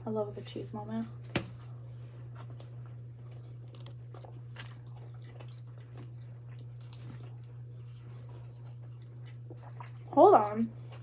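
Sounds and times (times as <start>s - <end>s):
steady low hum: 0.0s - 11.0s
person chewing: 2.2s - 10.1s.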